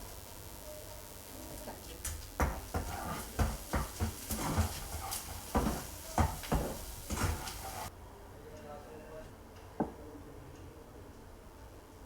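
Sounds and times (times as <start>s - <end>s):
food frying in oil: 0.0s - 7.9s
metal spatula scraping a wok: 2.5s - 7.9s.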